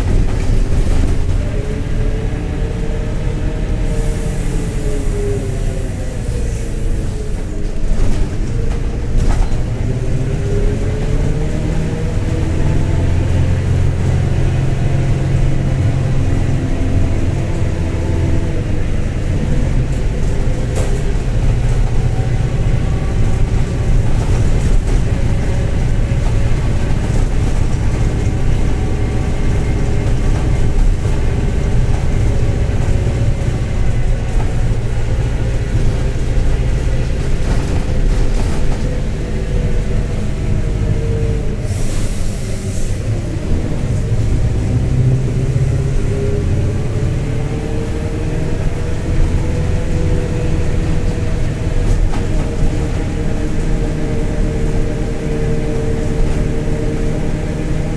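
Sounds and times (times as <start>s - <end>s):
bus diesel engine: 0.0s - 57.9s.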